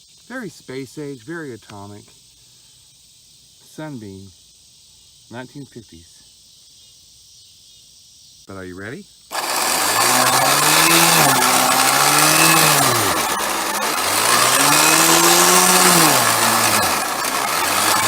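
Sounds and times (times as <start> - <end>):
electric lawnmower motor humming: 9.3 - 18.0.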